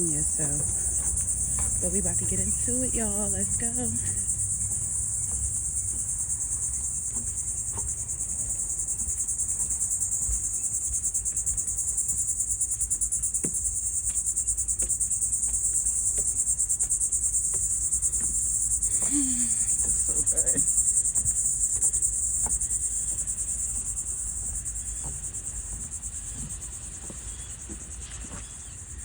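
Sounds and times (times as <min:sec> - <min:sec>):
insect chorus buzzing: 0:00.0 - 0:29.0.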